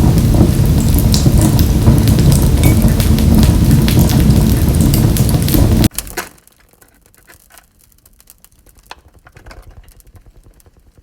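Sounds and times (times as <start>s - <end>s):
deep fire rumble: 0.0s - 6.1s, 7.0s - 11.0s
wood fire crackling in a stove: 0.0s - 11.0s.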